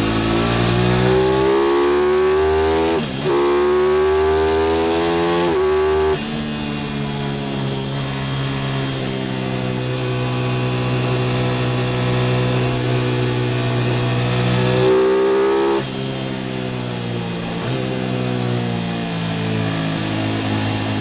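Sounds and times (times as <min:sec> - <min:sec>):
motorcycle engine running under load: 0:00.0 - 0:21.0.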